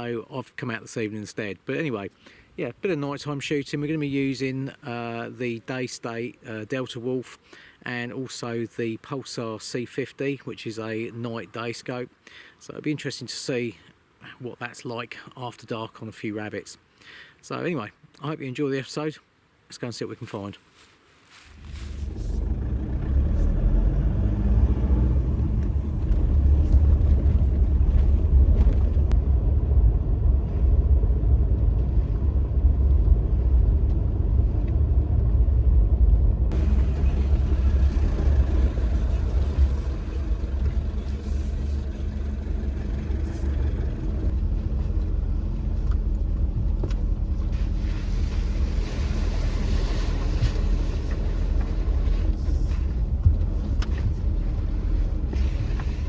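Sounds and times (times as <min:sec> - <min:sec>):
vehicle engine and wheels rumbling: 0:21.4 - 0:56.0.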